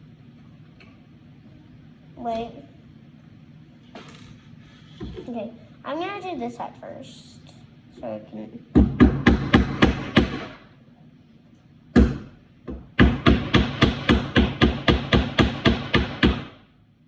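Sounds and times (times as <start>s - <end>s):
hammer striking nails into wood: 8.8s - 10.6s, 12.0s - 16.6s.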